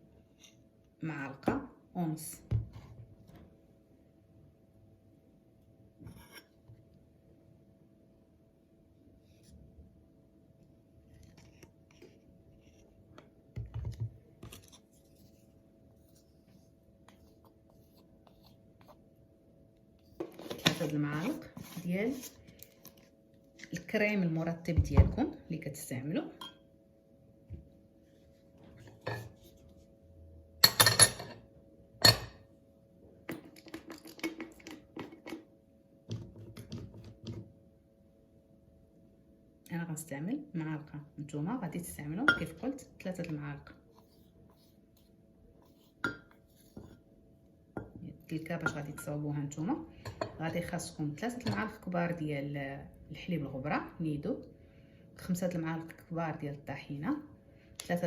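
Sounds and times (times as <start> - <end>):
spoon scraping container: 20.2 - 23.8.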